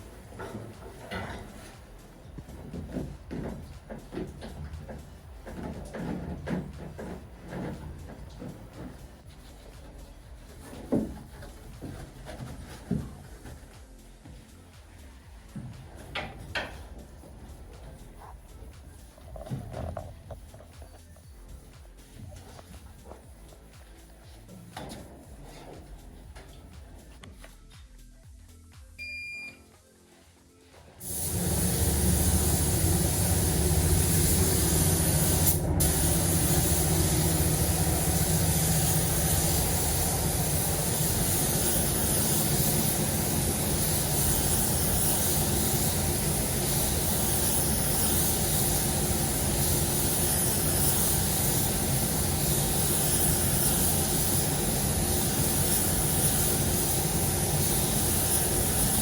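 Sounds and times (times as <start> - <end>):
spray paint air hiss: 0.0 - 28.1, 31.0 - 59.0
motor hum: 31.1 - 40.9.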